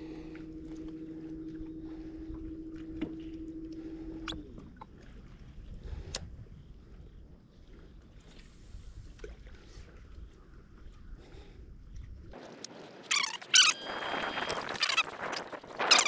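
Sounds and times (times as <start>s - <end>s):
electric motor humming: 12.4s - 16.0s.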